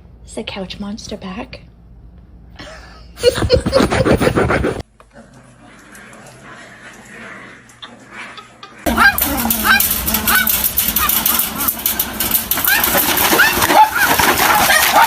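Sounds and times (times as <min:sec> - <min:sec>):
dog grumbling: 0:03.7 - 0:15.0.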